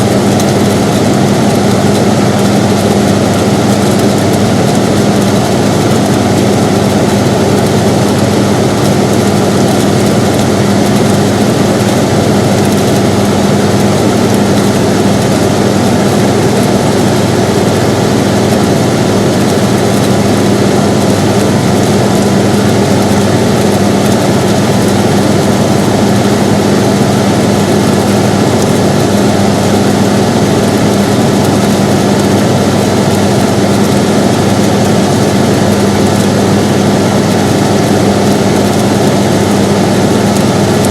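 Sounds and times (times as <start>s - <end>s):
air conditioner running: 0.0s - 40.9s.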